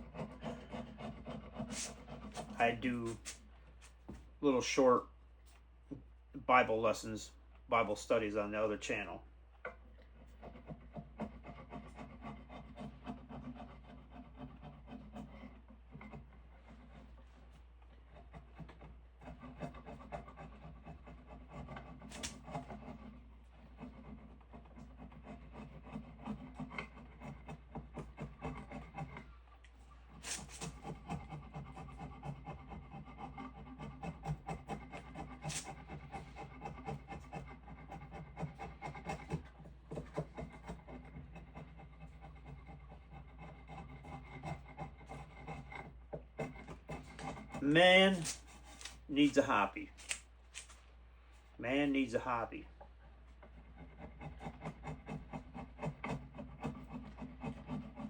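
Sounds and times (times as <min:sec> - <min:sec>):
hand rubbing wooden stick: 0:00.0 - 0:04.0, 0:10.2 - 0:50.8.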